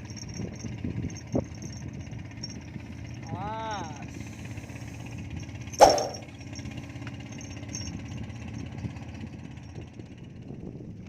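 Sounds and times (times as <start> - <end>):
boat motor rumbling: 0.0 - 11.0
sharp loud knock: 5.8 - 6.3.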